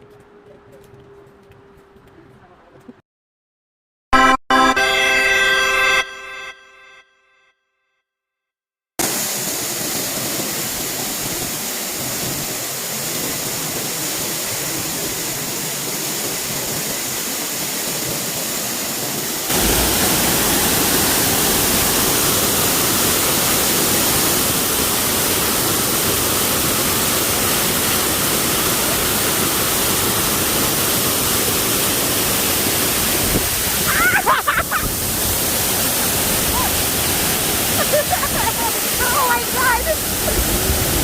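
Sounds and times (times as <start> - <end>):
waterfall rushing: 9.0 - 41.0.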